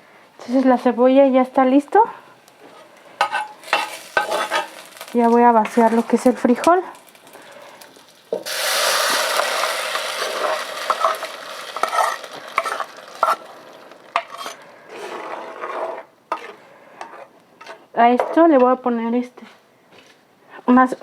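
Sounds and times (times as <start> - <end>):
beans sizzling in hot oil: 2.4 - 17.8.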